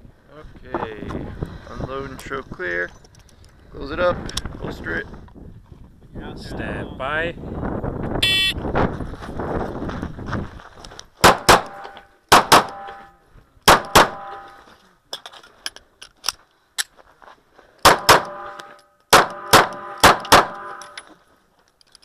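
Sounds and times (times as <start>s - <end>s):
handgun shots: 11.2s - 13.0s, 13.7s - 14.5s, 17.8s - 21.0s
gun handling clicks: 15.1s - 17.0s, 17.8s - 22.0s.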